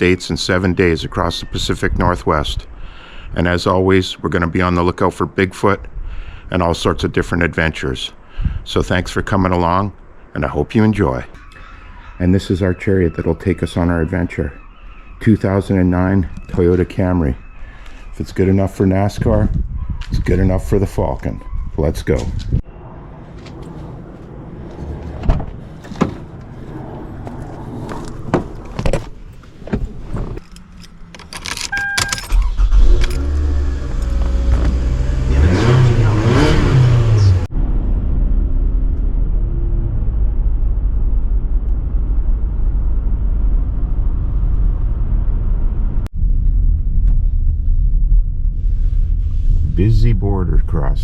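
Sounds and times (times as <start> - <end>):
road rumble of car driving: 7.1 - 51.0
car engine starting: 23.4 - 46.1
keys jangling: 30.4 - 33.4.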